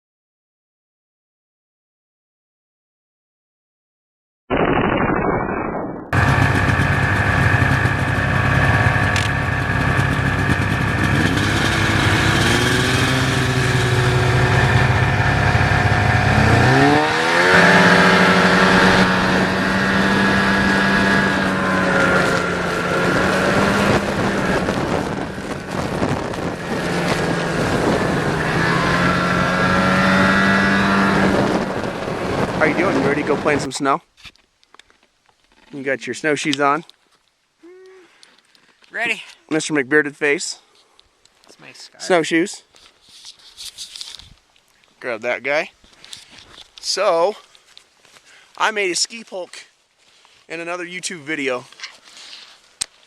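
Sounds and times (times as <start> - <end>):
vehicle engine running: 6.2 - 33.7.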